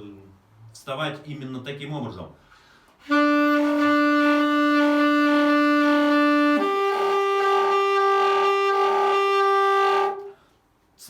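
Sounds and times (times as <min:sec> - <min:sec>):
saxophone holding notes: 0:03.0 - 0:10.4.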